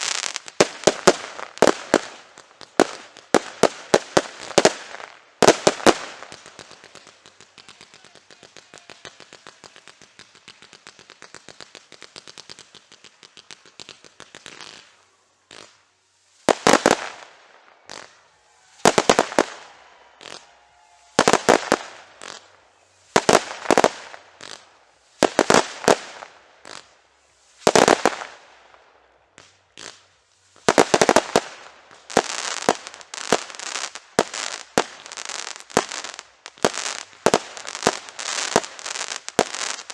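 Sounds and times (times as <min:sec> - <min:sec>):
fireworks crackling: 0:00.0 - 0:39.9.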